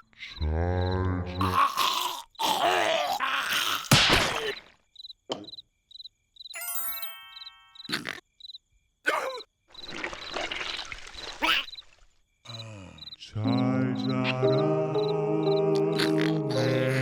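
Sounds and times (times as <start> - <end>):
cricket chirping: 0.0 - 2.8, 3.9 - 17.0
squeaky cartoon character vocals: 1.2 - 4.6, 7.8 - 8.2, 11.4 - 11.8.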